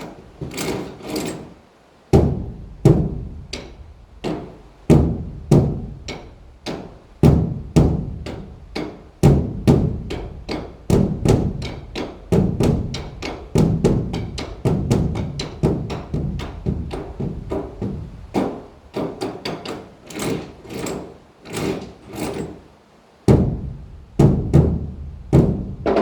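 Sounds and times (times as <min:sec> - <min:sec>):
drum beaten with sticks: 0:02.2 - 0:18.7, 0:23.3 - 0:26.0.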